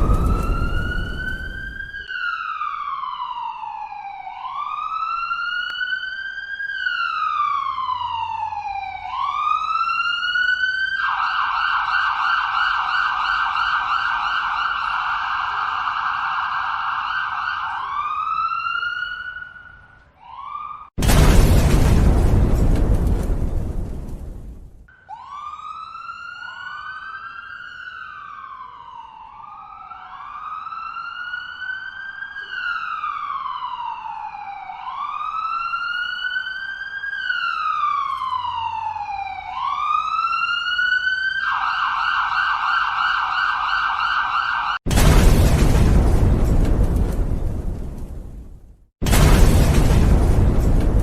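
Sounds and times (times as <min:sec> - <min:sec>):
emergency vehicle siren: 0:00.0 - 0:21.0, 0:24.9 - 0:48.2
loud noisy blast: 0:21.0 - 0:24.8, 0:44.9 - 0:51.0.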